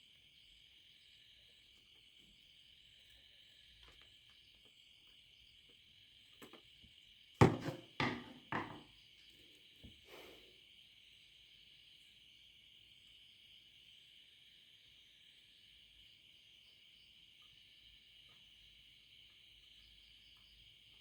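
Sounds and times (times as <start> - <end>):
hard objects knocking on work surface: 7.4 - 8.8.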